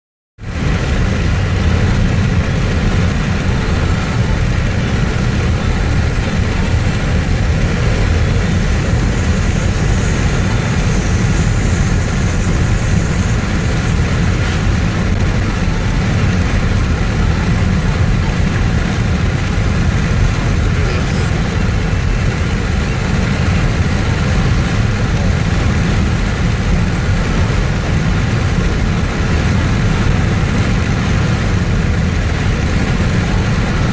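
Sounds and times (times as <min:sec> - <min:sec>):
vehicle engine and road noise: 0:00.4 - 0:33.9.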